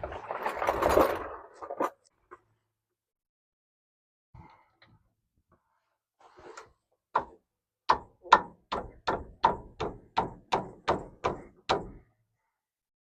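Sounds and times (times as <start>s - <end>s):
soft scrape: 6.2s - 6.7s.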